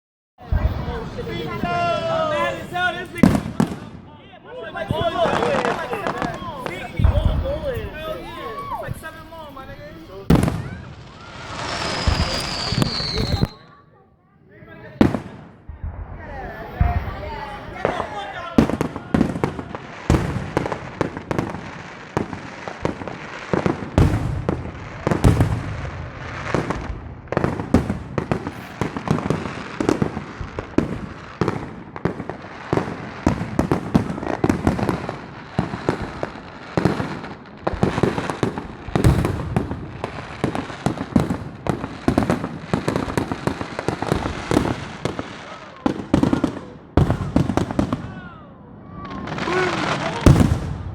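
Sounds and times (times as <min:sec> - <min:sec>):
loud firework booms: 0:00.4 - 0:04.2, 0:04.8 - 0:13.7, 0:15.0 - 0:50.9
fireworks bangs and crackles: 0:00.4 - 0:50.9.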